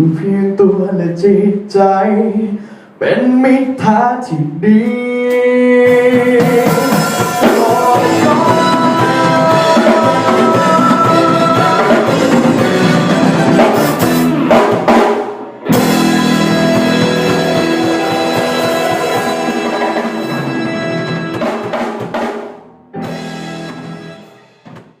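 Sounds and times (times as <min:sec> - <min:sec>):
instrumental band music: 0:05.3 - 0:25.0.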